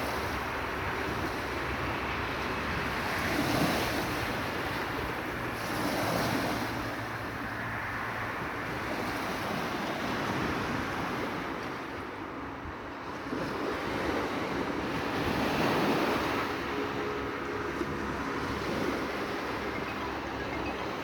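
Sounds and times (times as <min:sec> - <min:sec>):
sea waves breaking on shore: 0:00.0 - 0:21.0.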